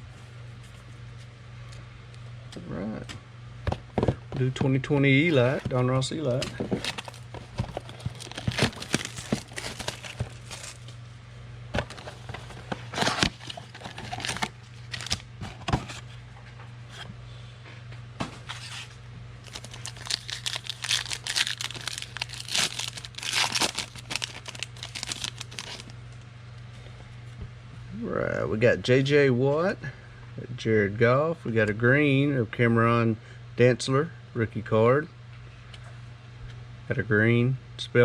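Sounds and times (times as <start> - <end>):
card pack wrappers tearing: 6.3 - 10.9, 11.8 - 15.3, 19.4 - 25.9.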